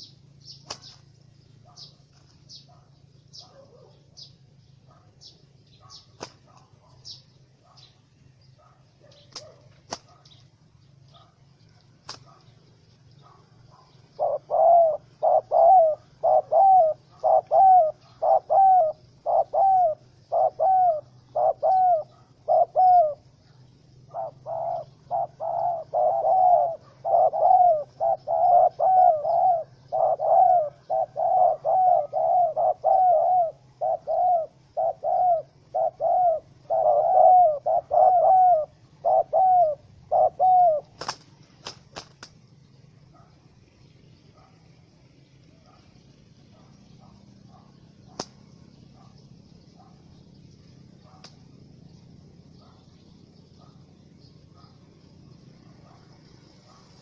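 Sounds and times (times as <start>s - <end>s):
dove cooing: 0.0s - 7.9s, 8.5s - 42.2s, 42.9s - 57.0s
sharp clicks: 48.1s - 48.4s.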